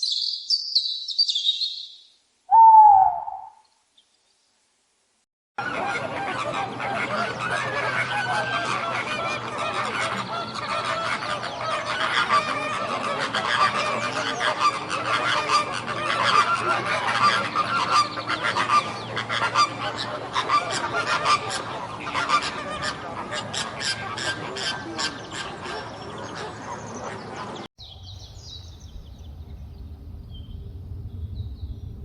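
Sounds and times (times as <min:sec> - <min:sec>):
flock of birds calling: 0:05.6 - 0:27.7.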